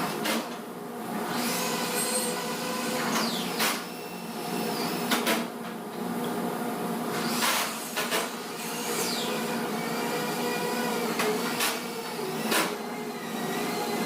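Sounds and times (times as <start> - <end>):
short sharp tool noises: 7.4 - 8.3.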